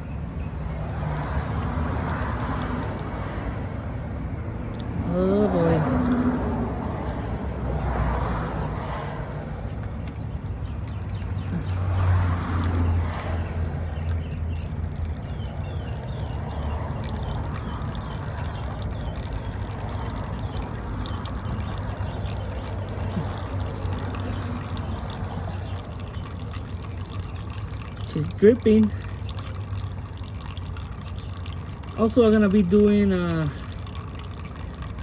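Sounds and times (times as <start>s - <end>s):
oil pouring into pan: 10.6s - 35.0s.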